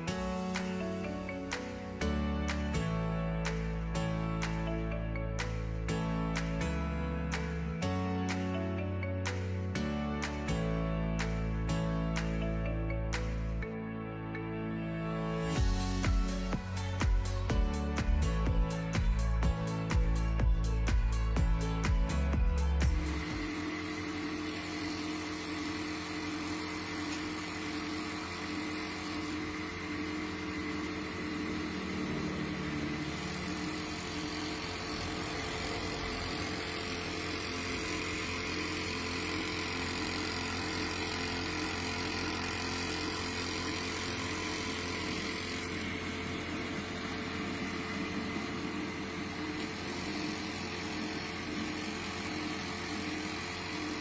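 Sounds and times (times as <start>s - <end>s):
sewing machine motor humming: 0.0s - 2.6s, 15.5s - 54.0s.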